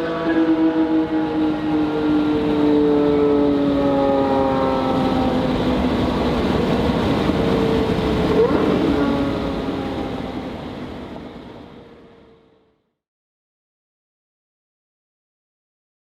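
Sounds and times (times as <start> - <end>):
road noise: 0.0 - 12.7.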